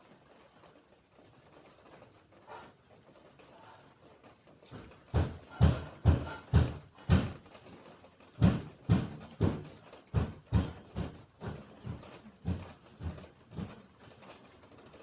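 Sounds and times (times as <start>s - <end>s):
heavy thumps: 5.1s - 7.5s, 8.4s - 13.9s.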